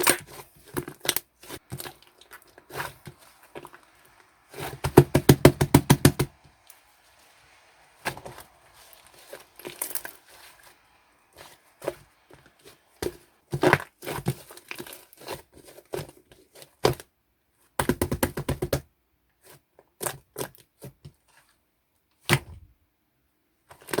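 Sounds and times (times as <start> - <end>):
slime squishing with sticky pops: 0.0 - 17.1.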